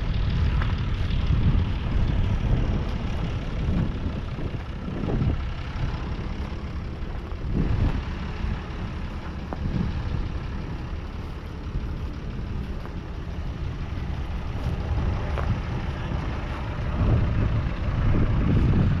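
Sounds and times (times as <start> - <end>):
diesel engine rumbling: 0.0 - 19.0.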